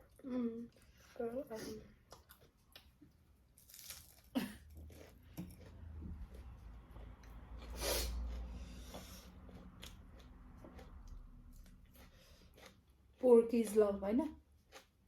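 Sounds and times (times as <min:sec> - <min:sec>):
person eating: 0:01.9 - 0:13.2.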